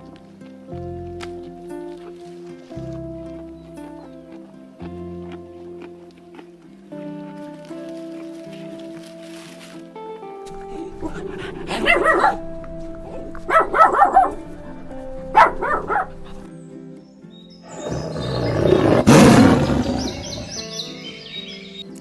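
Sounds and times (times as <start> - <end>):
background music: 0.0 - 22.0
animal barking: 10.6 - 16.5, 17.7 - 21.7
loud animal roar: 17.7 - 20.6.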